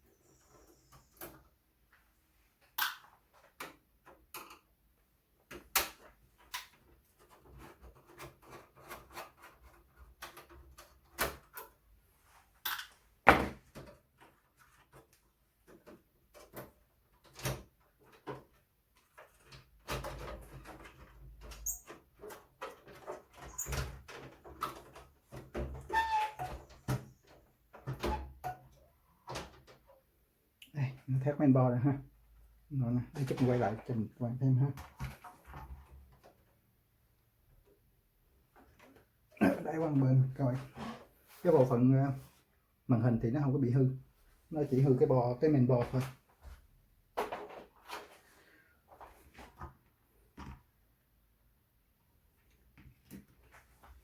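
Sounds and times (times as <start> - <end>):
rustling and scraping: 38.5 - 42.6, 45.8 - 50.6.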